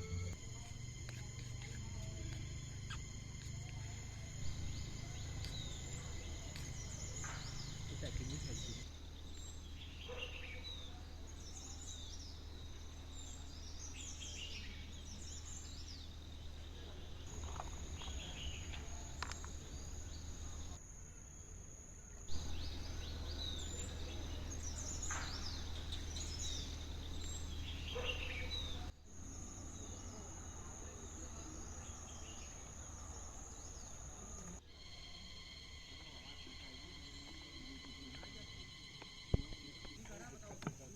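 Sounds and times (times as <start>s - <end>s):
high-pitched insect drone: 0.0s - 9.3s, 22.3s - 40.6s
birds chirping: 0.0s - 20.8s, 22.2s - 40.9s.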